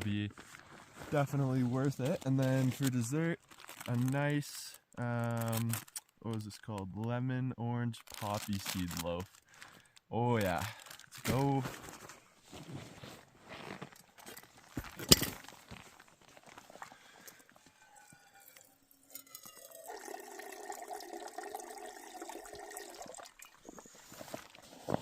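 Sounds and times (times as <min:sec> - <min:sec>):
water pouring into pot: 0:17.3 - 0:23.8.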